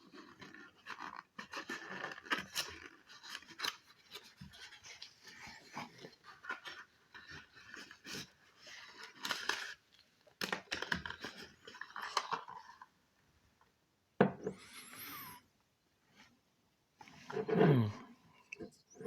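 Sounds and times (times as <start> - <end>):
cardboard and paper packaging rustling: 0.0 - 12.9.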